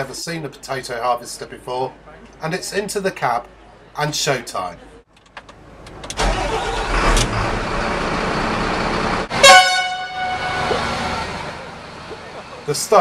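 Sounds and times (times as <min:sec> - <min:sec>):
heavy vehicle engine rumbling: 0:05.5 - 0:13.0
horn blast: 0:09.3 - 0:11.7.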